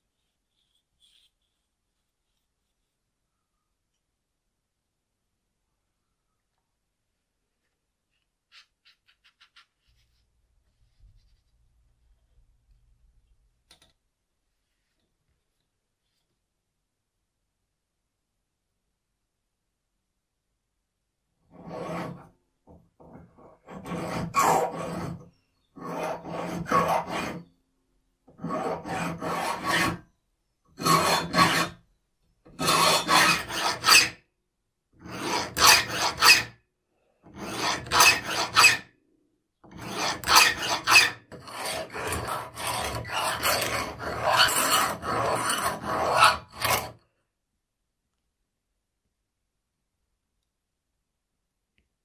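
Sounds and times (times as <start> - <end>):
file rasping on saw teeth: 21.5 - 22.3, 23.6 - 27.5, 28.3 - 30.0, 30.8 - 31.8, 32.5 - 34.2, 35.0 - 36.5, 37.3 - 38.8, 39.7 - 47.0.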